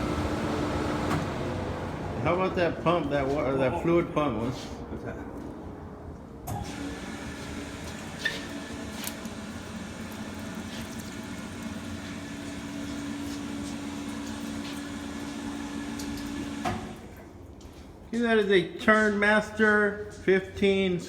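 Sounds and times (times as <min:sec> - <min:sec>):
coolant pump humming: 0:00.0 - 0:03.0, 0:06.4 - 0:18.1.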